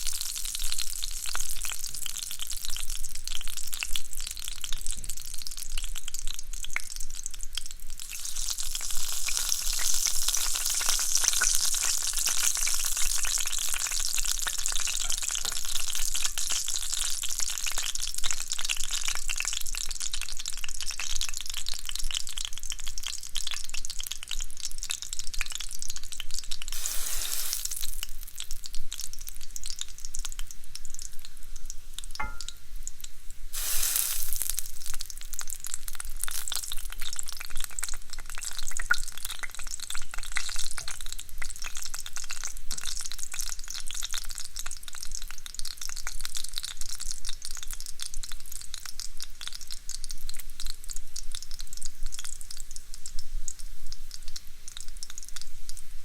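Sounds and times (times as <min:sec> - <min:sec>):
bacon sizzling in a pan: 0:00.0 - 0:56.0.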